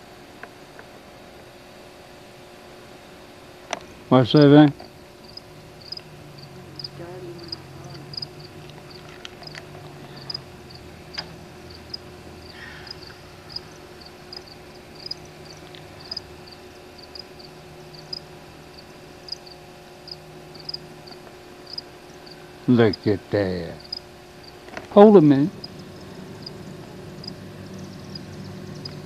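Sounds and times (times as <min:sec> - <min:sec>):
steady low hum: 0:00.0 - 0:29.0
cricket chirping: 0:03.9 - 0:29.0.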